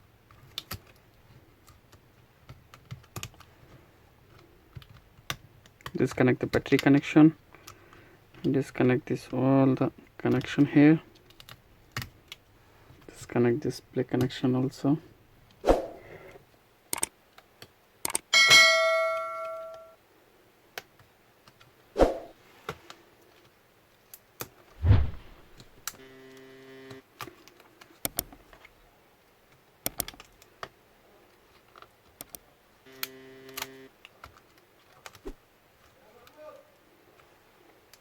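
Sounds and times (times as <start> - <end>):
small tools clicking on plastic: 16.9 - 18.3, 27.2 - 28.7, 29.5 - 30.8
metal clink: 18.4 - 20.0
heavy thump: 24.8 - 25.6.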